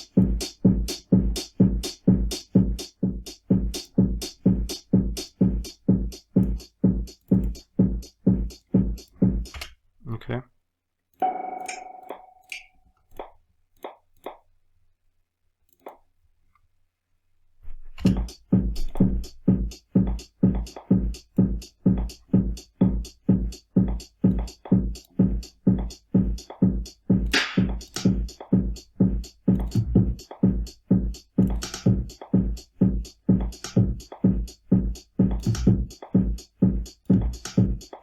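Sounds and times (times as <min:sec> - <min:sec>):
electronic kick drum: 0:00.0 - 0:09.6, 0:11.2 - 0:12.6, 0:18.1 - 0:38.0
hi-hats: 0:00.0 - 0:09.6, 0:18.1 - 0:38.0.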